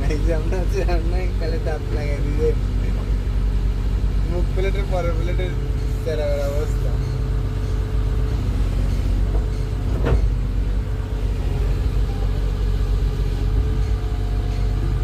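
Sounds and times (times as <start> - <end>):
excavator diesel engine running: 0.0 - 15.0
metal clank: 8.3 - 10.7.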